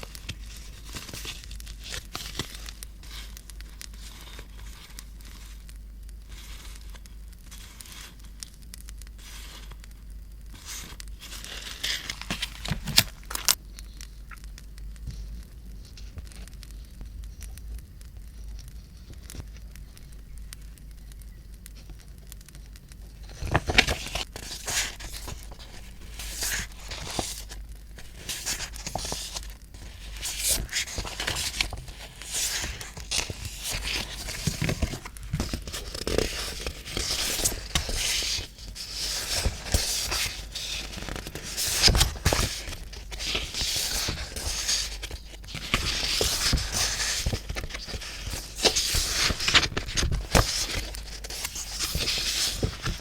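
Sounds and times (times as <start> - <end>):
paper tearing and crinkling: 10.6 - 13.6, 23.2 - 53.0.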